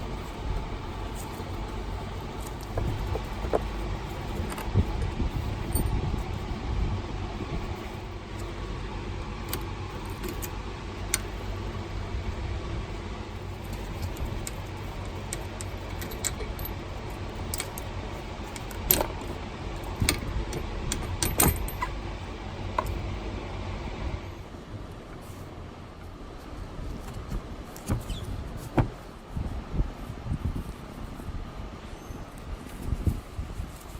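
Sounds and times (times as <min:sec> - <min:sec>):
low hum: 0:00.0 - 0:33.9
metal tools clinking: 0:05.6 - 0:06.0, 0:13.6 - 0:17.9, 0:18.5 - 0:22.0.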